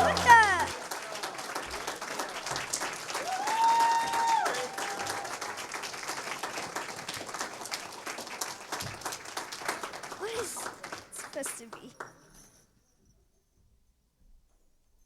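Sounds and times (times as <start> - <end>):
drawn-out cheer: 0.0 - 2.3, 3.0 - 5.8
crowd applauding: 0.0 - 12.1.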